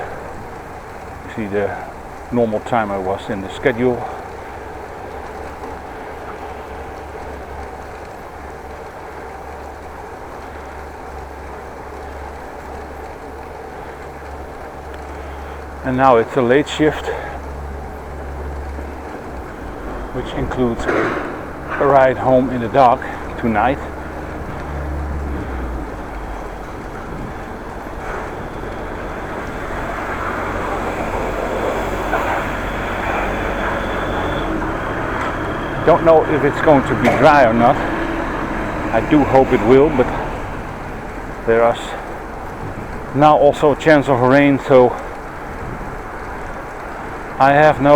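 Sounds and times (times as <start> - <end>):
low hum: 0.0 - 43.2
bicycle tyre noise: 0.0 - 47.9
wind noise: 17.4 - 44.2, 45.0 - 47.8.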